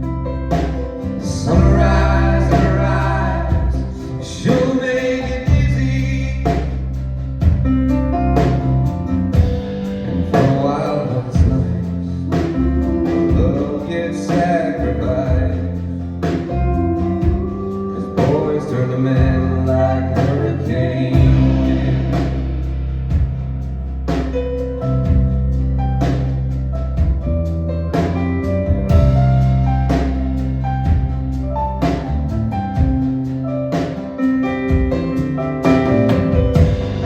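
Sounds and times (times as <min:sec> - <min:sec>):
guitar: 0:00.0 - 0:37.0
sustained bass notes: 0:00.0 - 0:37.0
person singing: 0:01.2 - 0:06.7, 0:10.3 - 0:15.6, 0:16.7 - 0:22.5
drum beat: 0:01.5 - 0:03.9, 0:09.4 - 0:10.8, 0:28.7 - 0:29.3, 0:34.7 - 0:37.0.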